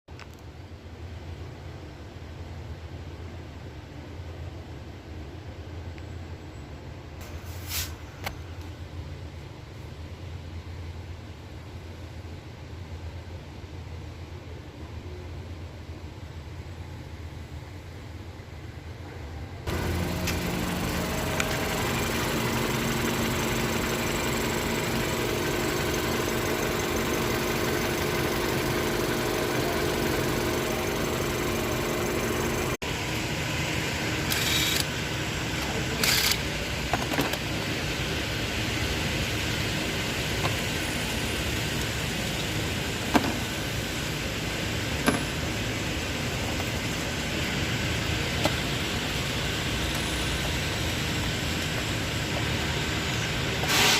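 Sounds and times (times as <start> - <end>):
short hisses and clicks: 7.2 - 8.4, 53.6 - 53.9
car engine idling: 19.7 - 36.0, 36.6 - 53.6.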